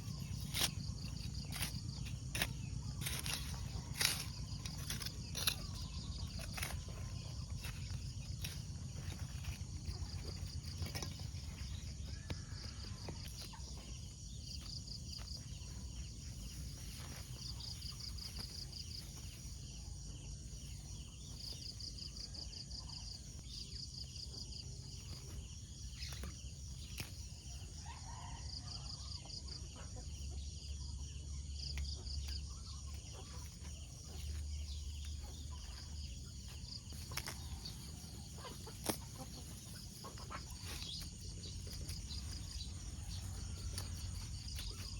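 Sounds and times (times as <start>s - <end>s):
insects chirping in trills: 0.0s - 44.9s.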